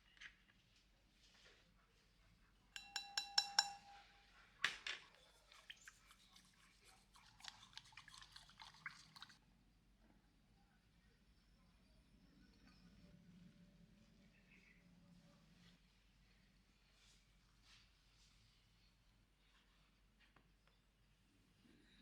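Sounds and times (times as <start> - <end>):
utensil tapping a bowl: 2.8 - 4.0
mixing clinks: 2.8 - 4.1.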